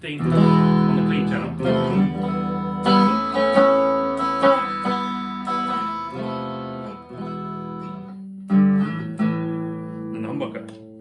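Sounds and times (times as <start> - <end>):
clean electric guitar ringing: 0.2 - 11.0.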